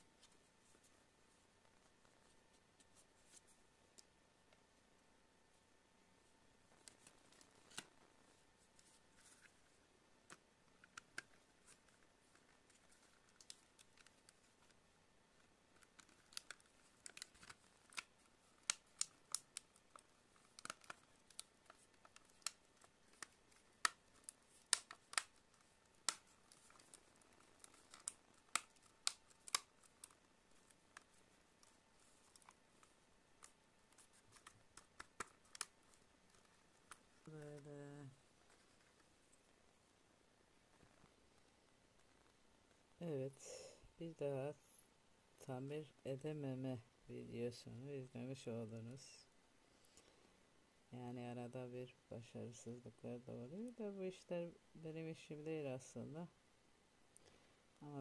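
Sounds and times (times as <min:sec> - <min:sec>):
clicks and snips of taping: 0:15.8 - 0:25.4, 0:27.6 - 0:30.2.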